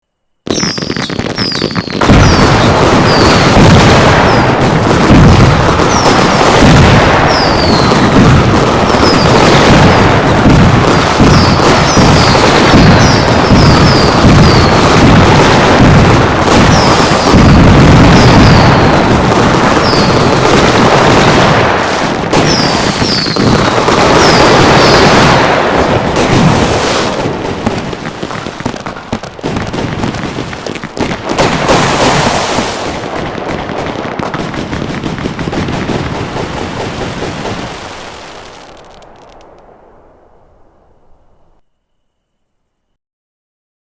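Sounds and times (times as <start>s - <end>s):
high falling firework whistles: 0.4s - 4.8s, 5.5s - 10.1s, 10.8s - 29.2s, 31.4s - 33.1s
fireworks explosions: 0.4s - 42.0s.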